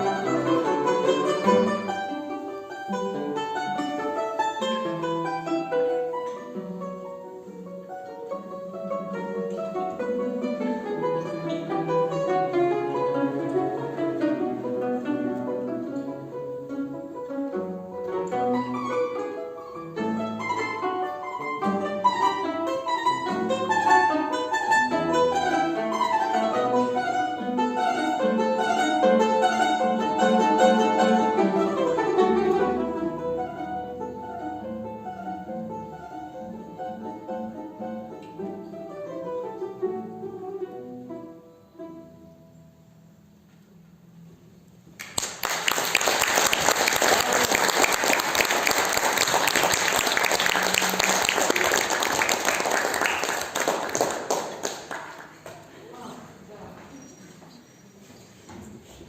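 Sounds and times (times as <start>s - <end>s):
plucked string instrument music: 0.0s - 43.1s.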